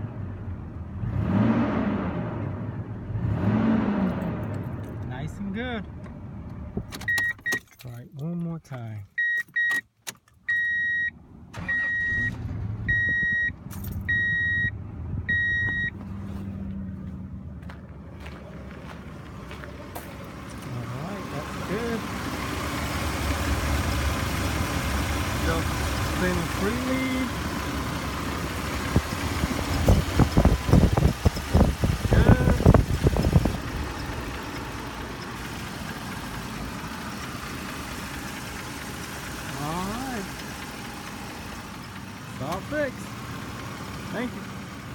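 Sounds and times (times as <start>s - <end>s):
dashboard warning chime beeping: 7.0s - 7.8s, 9.1s - 9.9s, 10.5s - 16.0s
engine cranking and starting: 11.5s - 14.4s, 21.8s - 43.9s
engine idling: 11.5s - 44.9s.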